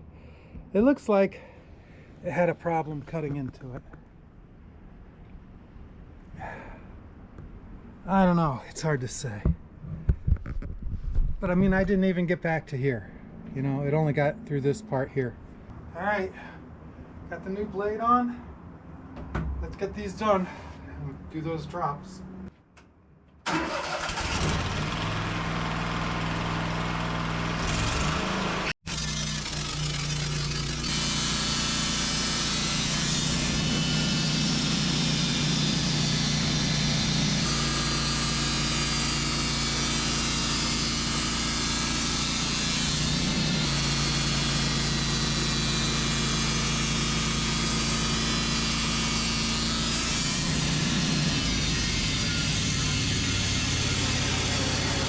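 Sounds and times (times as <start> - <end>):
sawmill engine and band blade: 23.6 - 55.0.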